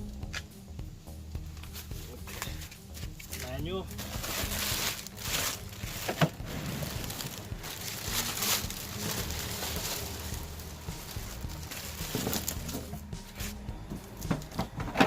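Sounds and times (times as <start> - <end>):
paper and plastic crinkling: 1.6 - 13.6.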